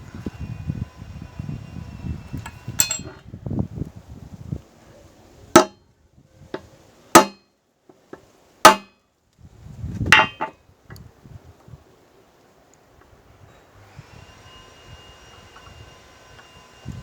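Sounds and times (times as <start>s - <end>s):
hammer striking metal punch: 2.8s - 3.2s, 5.6s - 5.8s, 7.2s - 7.4s, 8.7s - 9.0s, 10.2s - 10.5s.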